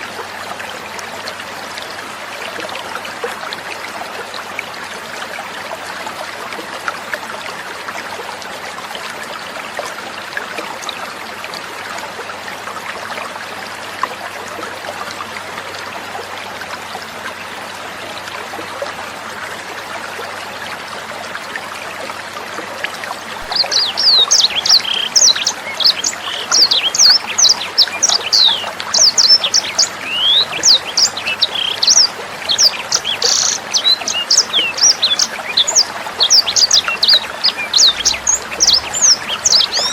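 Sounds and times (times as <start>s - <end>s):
water trickling: 0.0s - 39.9s
bird singing chirps and whistles: 23.4s - 39.9s.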